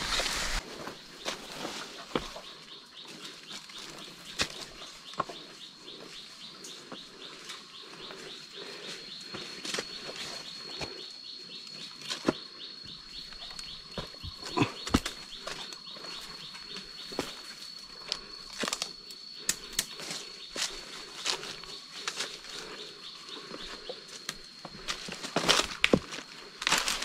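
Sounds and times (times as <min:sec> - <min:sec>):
steady high whine: 0:00.0 - 0:00.6.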